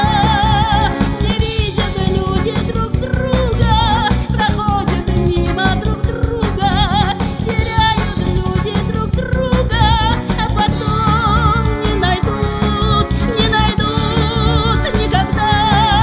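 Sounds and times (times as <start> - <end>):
pop backing track with drums: 0.0 - 16.0
woman singing with vibrato: 0.0 - 16.0.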